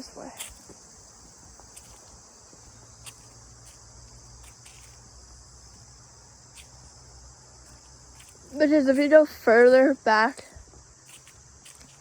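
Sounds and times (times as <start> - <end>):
crickets chirring: 0.0 - 12.0.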